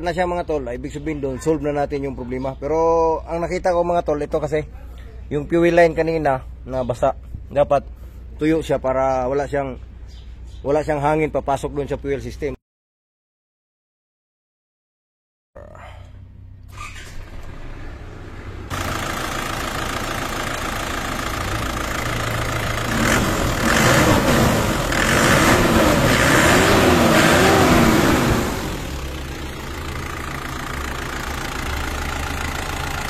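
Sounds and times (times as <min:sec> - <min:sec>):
diesel engine idling: 0:17.9 - 0:33.0.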